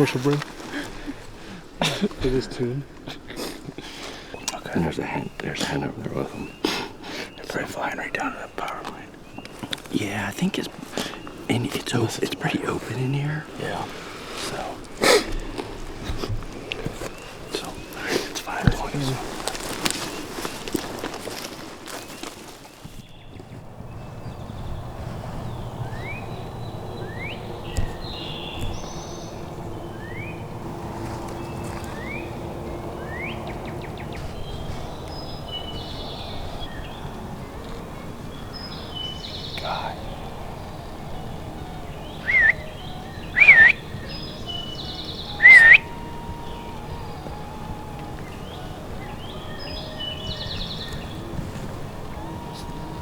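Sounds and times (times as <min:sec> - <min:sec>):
songbirds whistling: 0:00.0 - 0:53.0
buzzy bird trills: 0:17.0 - 0:53.0
steady low rumble: 0:23.4 - 0:53.0.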